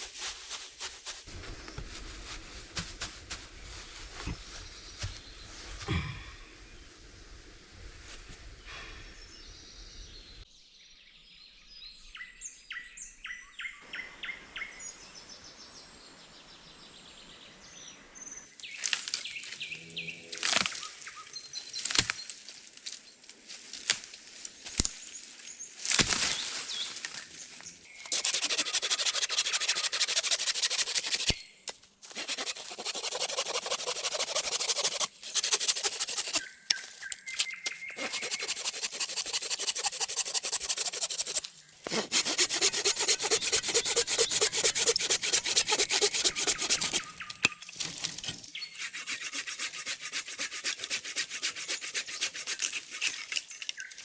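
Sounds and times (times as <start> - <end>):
rasping scrape on wood: 28.0 - 31.4, 32.1 - 53.5.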